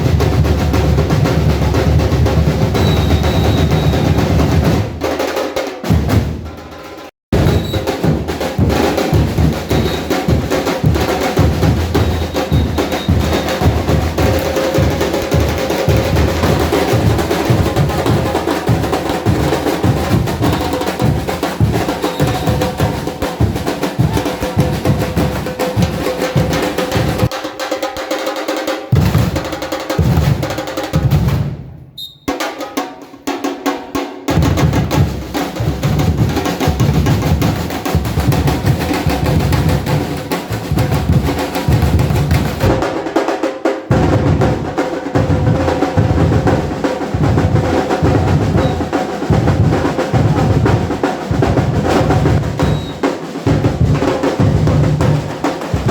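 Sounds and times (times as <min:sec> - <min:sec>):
bass drums: 0:00.0 - 0:06.6, 0:07.3 - 0:27.3, 0:28.9 - 0:32.0, 0:34.3 - 0:43.1, 0:43.9 - 0:55.9
snare drum rolls: 0:00.0 - 0:55.9.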